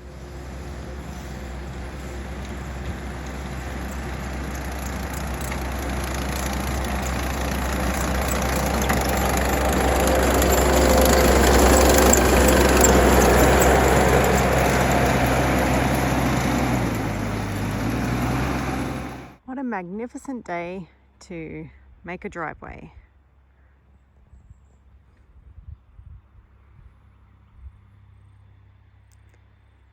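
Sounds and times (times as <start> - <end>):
diesel engine of tracked machine: 0.0 - 19.4.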